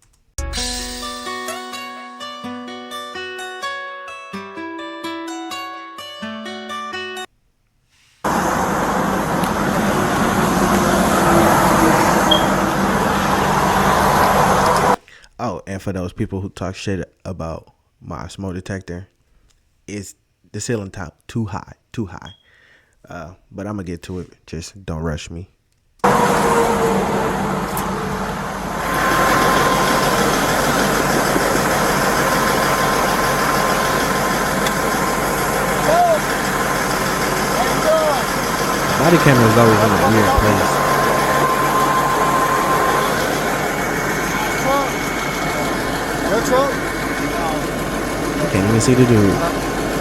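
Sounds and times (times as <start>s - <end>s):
vehicle engine and road noise: 8.2s - 15.0s, 26.0s - 50.0s
highway traffic roar: 8.3s - 15.0s, 26.0s - 50.0s
faint steady whine: 27.9s - 50.0s.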